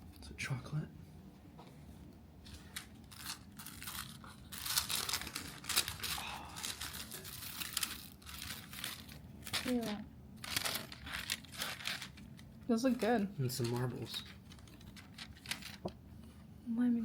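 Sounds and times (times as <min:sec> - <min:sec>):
packaging rustling and crinkling: 0:02.4 - 0:16.0.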